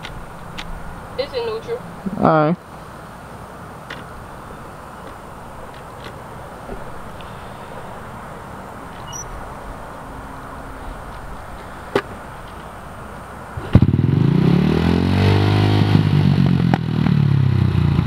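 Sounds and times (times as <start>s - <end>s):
dirt bike engine kick-started: 13.6s - 14.4s.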